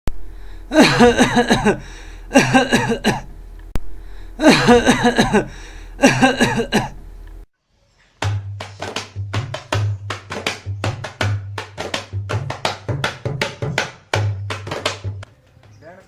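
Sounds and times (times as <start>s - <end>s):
steady low hum: 0.1s - 7.5s
person coughing hard: 0.7s - 3.3s, 4.4s - 7.0s.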